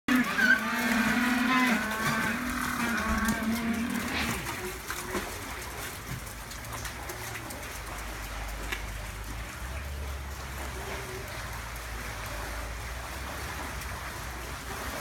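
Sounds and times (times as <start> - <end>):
penguins calling: 0.1 - 4.4.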